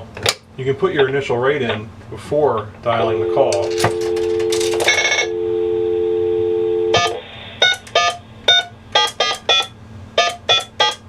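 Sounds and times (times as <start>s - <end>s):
phone dial tone: 2.9s - 9.1s
touch-tone key beeps: 3.0s - 5.5s, 6.5s - 11.0s.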